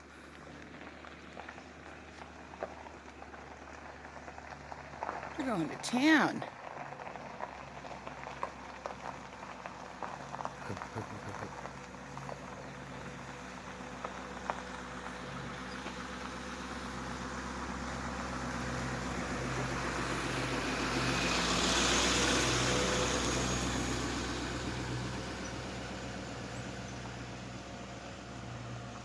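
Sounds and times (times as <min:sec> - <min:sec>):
vehicle passing by: 0:10.0 - 0:29.0.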